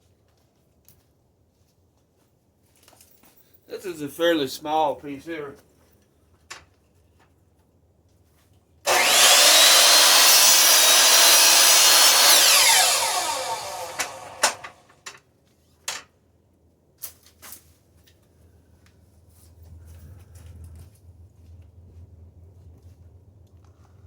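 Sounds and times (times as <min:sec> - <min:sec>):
miter saw whining: 0:08.9 - 0:14.9.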